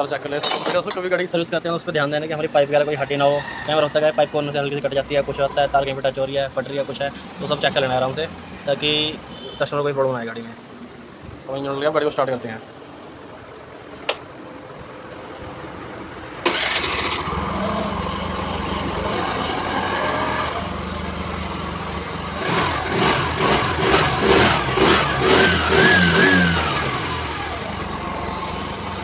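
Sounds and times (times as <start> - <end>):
scooter engine revving and idling: 12.7 - 29.0.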